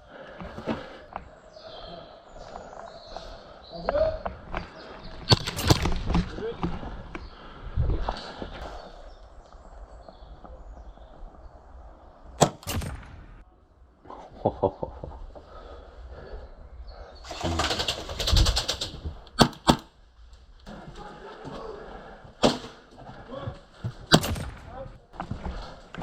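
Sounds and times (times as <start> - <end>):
airsoft pistol shots: 12.4 - 13.4, 24.1 - 24.7.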